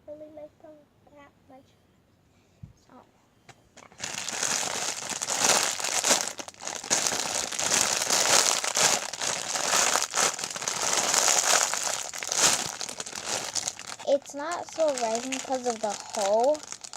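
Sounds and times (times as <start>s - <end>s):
plastic bag crinkling: 3.8s - 16.9s.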